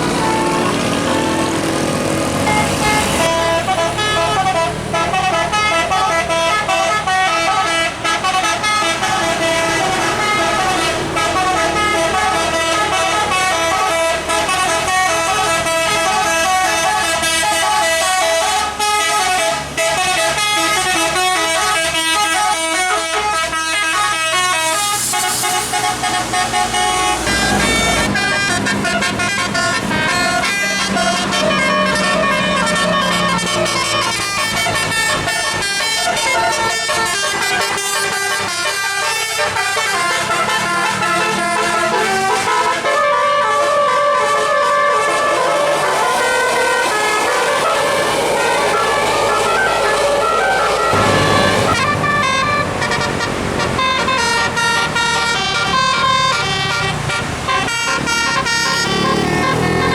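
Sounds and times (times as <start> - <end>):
bus engine running: 0.0 - 59.9
musical air horn tune: 0.0 - 59.9
air hiss: 24.5 - 27.2.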